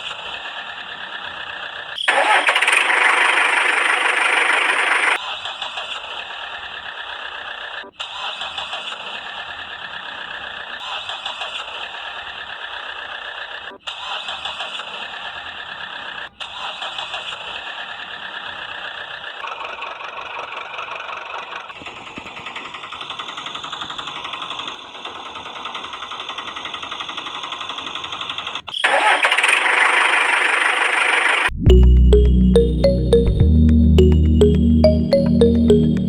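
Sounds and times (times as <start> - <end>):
small motor buzzing rattle: 2.1 - 5.2, 18.0 - 31.5.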